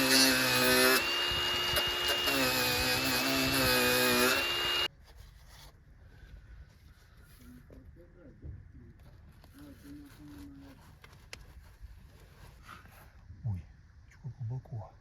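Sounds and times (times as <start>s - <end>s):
electric power tool whining: 0.0s - 4.9s.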